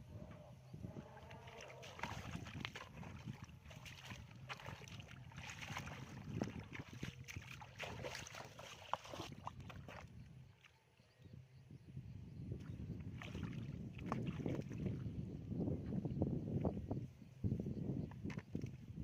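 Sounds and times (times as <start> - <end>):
water splashing and sloshing: 0.8 - 10.8, 12.6 - 15.2.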